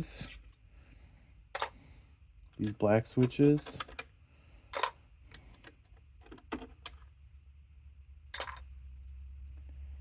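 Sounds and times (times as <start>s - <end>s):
small plastic parts clicking: 2.5s - 4.1s.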